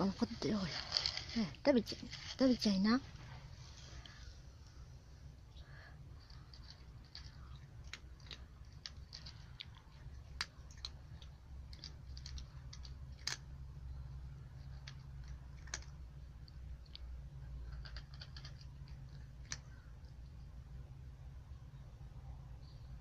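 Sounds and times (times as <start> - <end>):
cat crunching dry kibble: 0.0 - 3.3, 5.9 - 20.5.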